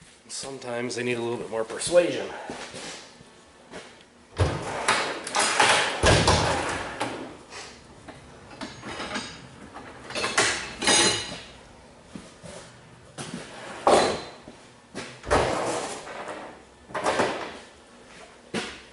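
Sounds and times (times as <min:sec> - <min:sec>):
metal clanking and scraping: 0:08.4 - 0:11.6.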